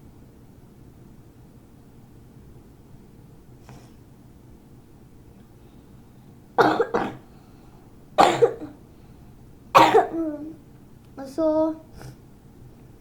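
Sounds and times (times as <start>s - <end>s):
person coughing: 6.6s - 7.3s, 8.2s - 8.8s, 9.8s - 10.3s.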